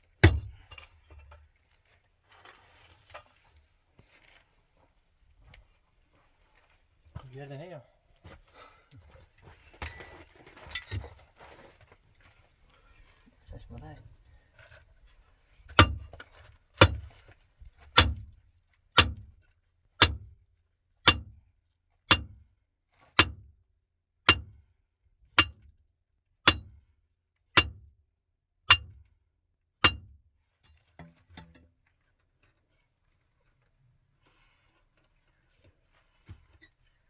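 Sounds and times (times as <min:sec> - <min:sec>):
sharp knocks: 0:15.8 - 0:16.0.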